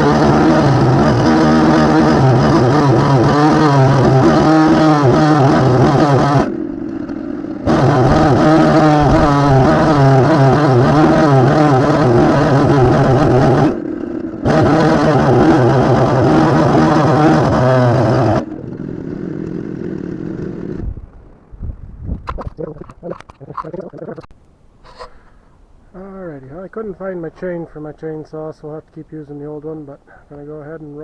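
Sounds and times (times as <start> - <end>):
chainsaw cutting at full throttle: 0.0 - 21.0
chainsaw idling: 0.0 - 21.4.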